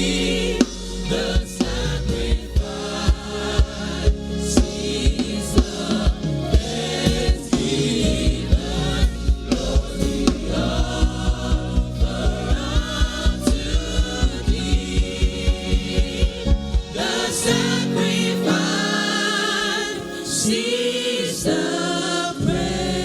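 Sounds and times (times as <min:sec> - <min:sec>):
steady drum beat: 0:00.0 - 0:18.2
voices singing over a band: 0:00.0 - 0:23.0.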